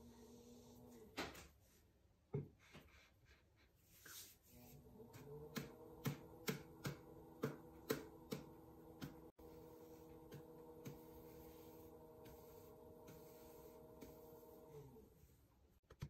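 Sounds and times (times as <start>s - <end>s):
electric pottery wheel humming: 4.6s - 15.3s.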